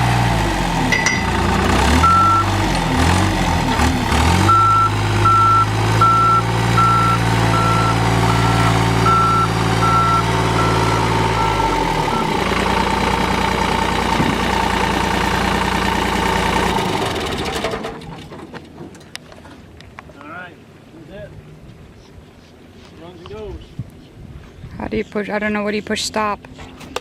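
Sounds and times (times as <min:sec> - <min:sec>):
diesel engine running: 0:00.0 - 0:18.5
high electronic beeper: 0:00.9 - 0:02.5.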